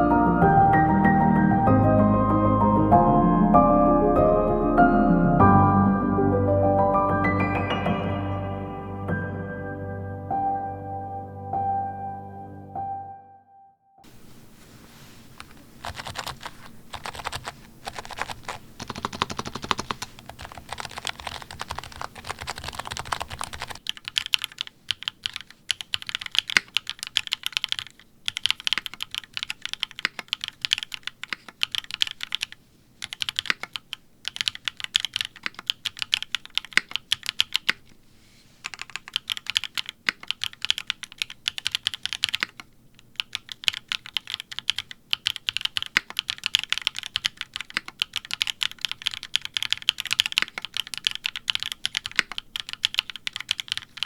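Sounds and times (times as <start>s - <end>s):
fast keyboard typing: 15.4s - 38.0s, 38.6s - 54.0s.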